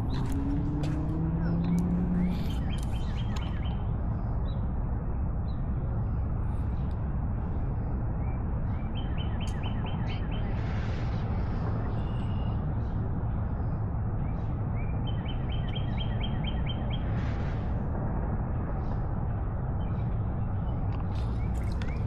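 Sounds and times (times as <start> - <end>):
songbird singing: 0.0 - 4.7, 8.2 - 10.6, 11.8 - 12.9, 14.2 - 17.1
steady low rumble: 0.0 - 22.0.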